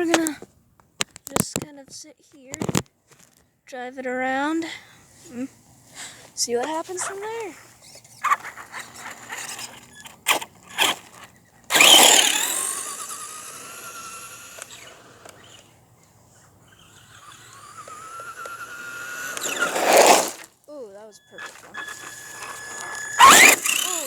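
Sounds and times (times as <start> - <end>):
toy car motor whining: 5.2 - 24.0.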